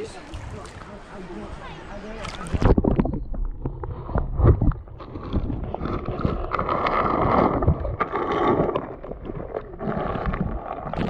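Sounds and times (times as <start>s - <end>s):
water sloshing and gurgling: 0.0s - 11.0s
small splashes and knocks: 2.2s - 11.0s.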